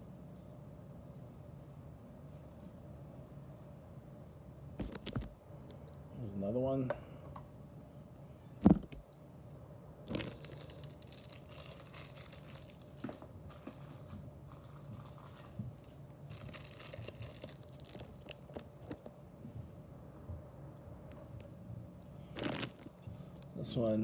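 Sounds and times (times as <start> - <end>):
packaging crinkling: 10.1 - 19.2, 22.3 - 23.0.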